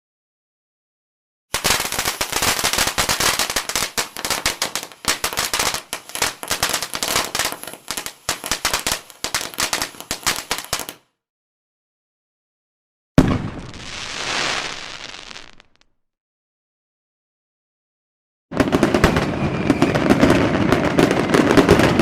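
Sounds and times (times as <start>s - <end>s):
fireworks crackling pops: 1.5s - 11.0s, 13.2s - 16.0s, 18.6s - 22.0s.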